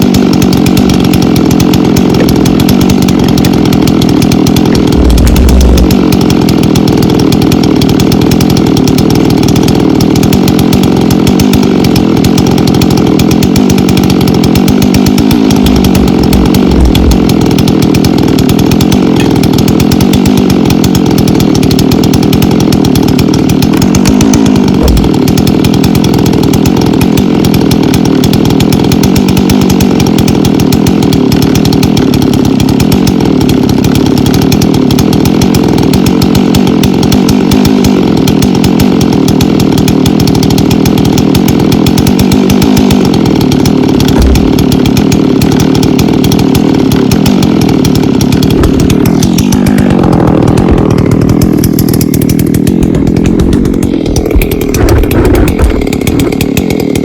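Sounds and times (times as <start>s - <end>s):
chainsaw cutting wood: 0.0s - 57.0s
short low thumps: 4.8s - 6.2s, 15.4s - 18.3s, 24.7s - 25.3s, 44.1s - 44.7s.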